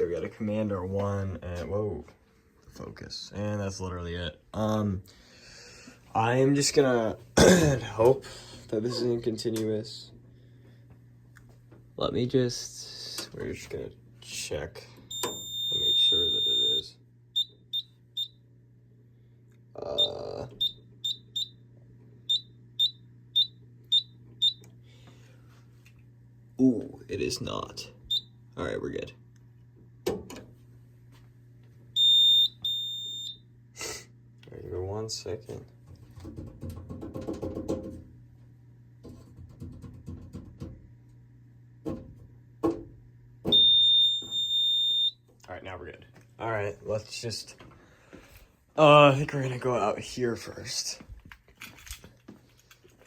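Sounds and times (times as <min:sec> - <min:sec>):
steady low hum: 0:00.0 - 0:53.0
fire alarm short high-pitched beeps: 0:15.1 - 0:18.4, 0:20.0 - 0:21.6, 0:22.3 - 0:24.7, 0:28.1 - 0:28.3, 0:32.0 - 0:33.5, 0:43.5 - 0:45.2
clicking and rattling handling noises: 0:51.1 - 0:53.0.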